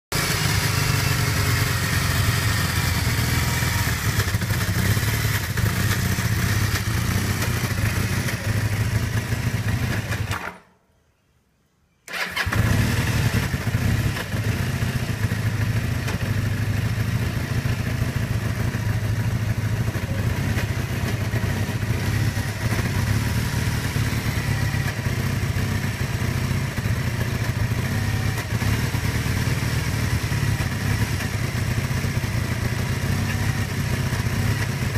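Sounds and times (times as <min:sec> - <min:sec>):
motorcycle engine idling roughly: 0:00.2 - 0:10.3, 0:12.4 - 0:34.9.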